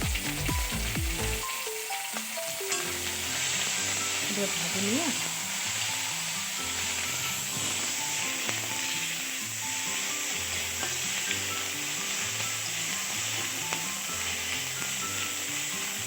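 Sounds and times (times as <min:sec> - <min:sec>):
food sizzling in hot oil: 0:00.0 - 0:16.0
spatula tapping a pan: 0:10.5 - 0:11.7.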